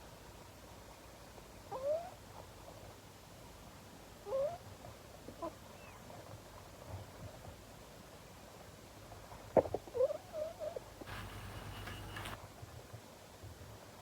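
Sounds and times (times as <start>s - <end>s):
faint background hiss: 0.0s - 14.0s.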